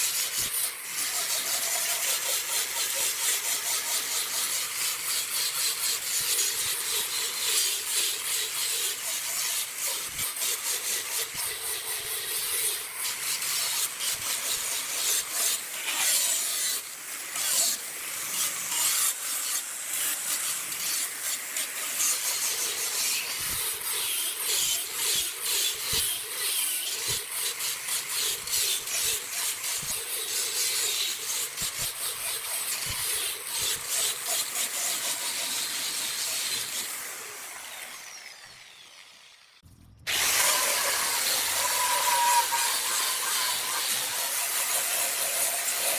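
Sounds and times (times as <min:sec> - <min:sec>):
tool scraping wood on lathe: 0:00.0 - 0:16.8, 0:18.4 - 0:37.2, 0:40.1 - 0:45.9.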